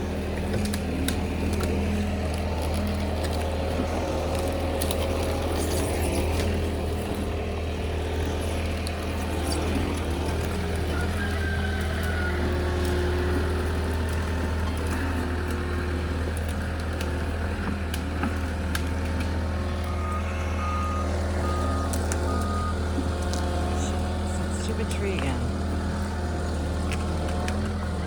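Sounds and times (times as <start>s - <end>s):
diesel engine running: 0.0s - 28.0s
reverse alarm beeps: 19.8s - 22.8s.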